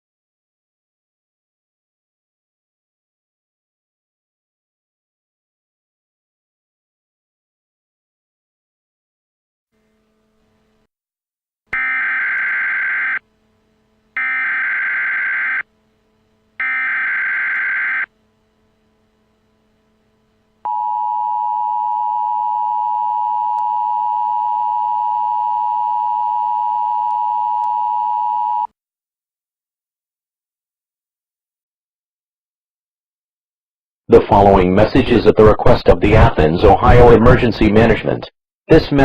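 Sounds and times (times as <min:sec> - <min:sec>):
digital data tone bursts: 0:11.8 - 0:13.2, 0:14.2 - 0:15.7, 0:16.6 - 0:18.1
two-tone attention signal: 0:20.7 - 0:28.7.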